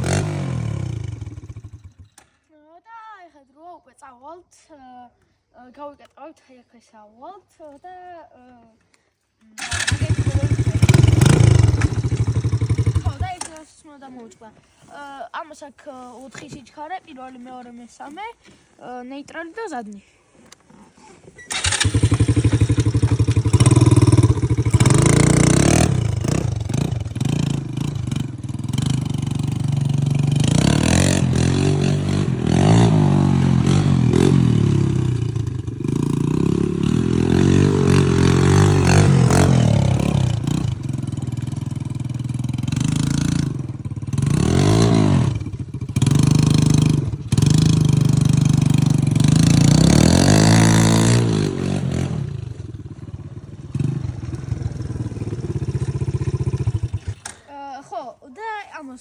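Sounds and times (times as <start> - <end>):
quad bike engine revving: 0.0 - 2.3, 9.6 - 13.7, 21.4 - 57.5.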